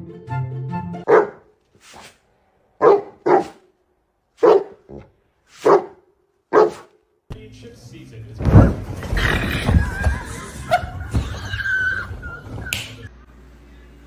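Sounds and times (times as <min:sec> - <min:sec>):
background music: 0:00.0 - 0:01.1
dog barking: 0:01.0 - 0:01.6, 0:02.8 - 0:03.7, 0:04.4 - 0:07.0.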